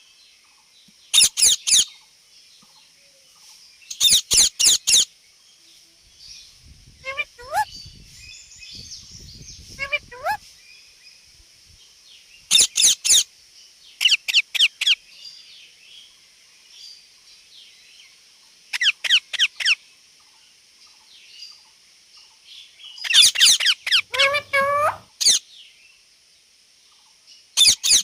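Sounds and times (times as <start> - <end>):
parakeet shrill calls: 1.1 - 1.9, 3.9 - 5.1, 7.0 - 7.8, 9.7 - 10.4, 12.5 - 13.3, 18.7 - 19.8, 23.0 - 25.4, 27.6 - 28.0.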